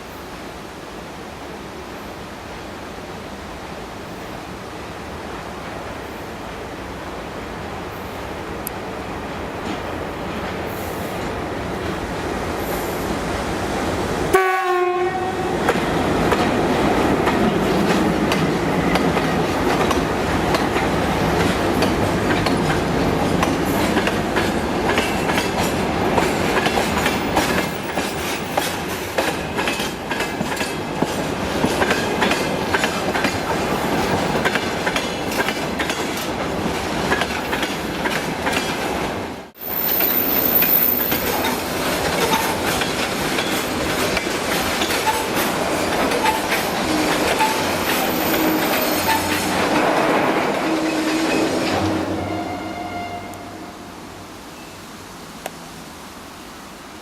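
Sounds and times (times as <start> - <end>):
electric train rumbling: 0.0 - 57.0
train horn blast: 14.3 - 15.5, 48.1 - 49.8, 50.5 - 54.0
wheels clacking over rail joints: 15.6 - 39.1, 40.0 - 52.2.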